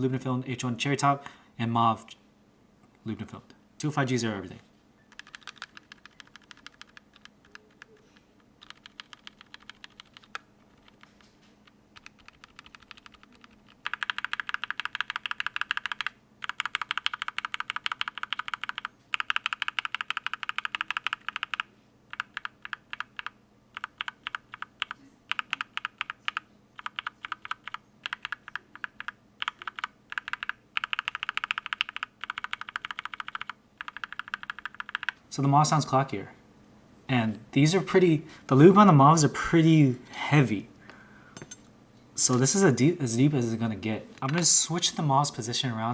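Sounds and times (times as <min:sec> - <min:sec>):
mechanical keyboard typing: 0:05.1 - 0:08.0, 0:08.6 - 0:35.2.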